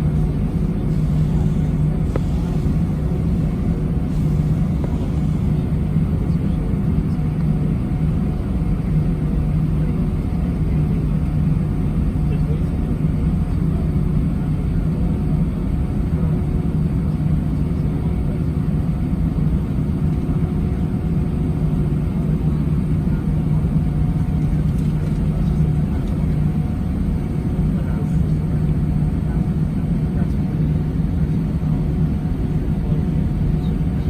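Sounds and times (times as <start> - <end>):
constant low hum: 0.0 - 34.0
jet engine cabin rumble: 0.0 - 34.0.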